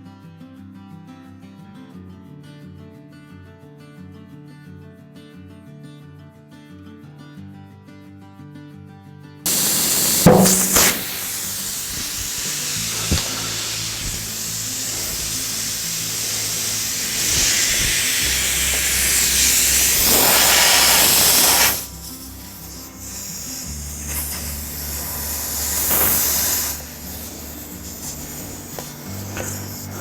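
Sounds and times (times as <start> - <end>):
tire bead snapping: 9.5 - 27.0
compressed air hissing: 9.5 - 30.0.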